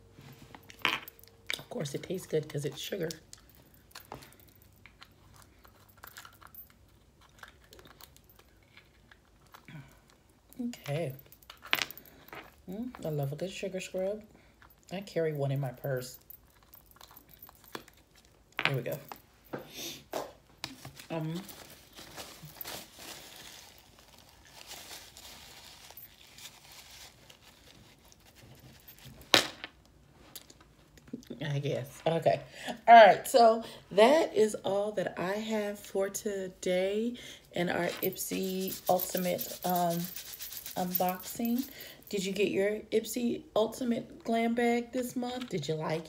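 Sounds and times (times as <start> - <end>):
small rustling and handling noises: 0.0 - 32.2, 37.5 - 42.2
small clicks and crinkles: 2.8 - 12.6, 16.2 - 19.2, 20.6 - 31.2.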